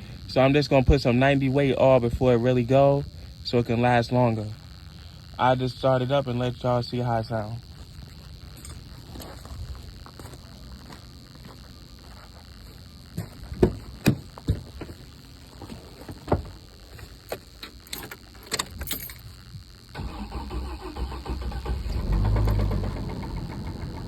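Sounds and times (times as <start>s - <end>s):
sharp clicks and clunks: 17.3s - 19.3s
truck engine starting and idling: 19.9s - 24.0s.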